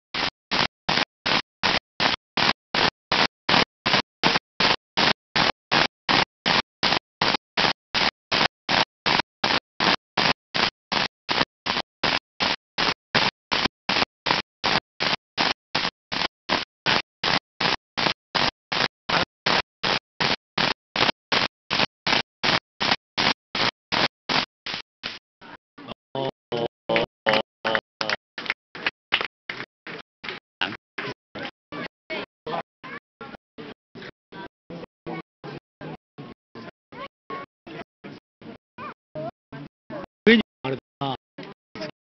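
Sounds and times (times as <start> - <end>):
stuttering chopped-up audio: 0.1 - 33.0.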